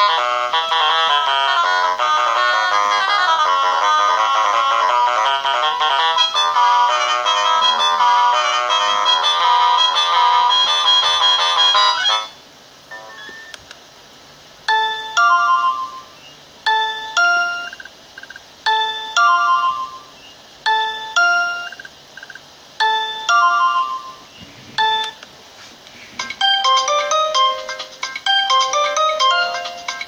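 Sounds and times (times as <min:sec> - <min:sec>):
mobile phone ringtone: 0:05.1 - 0:13.6, 0:14.7 - 0:17.9, 0:18.7 - 0:21.9, 0:22.8 - 0:25.2, 0:26.3 - 0:30.0.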